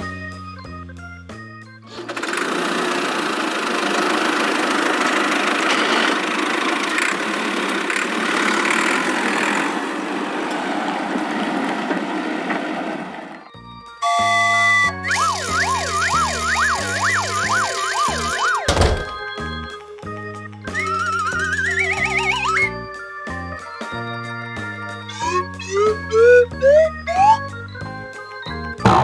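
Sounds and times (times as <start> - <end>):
rattly machine engine: 1.9 - 10.4
background music with plucked notes: 13.6 - 29.0.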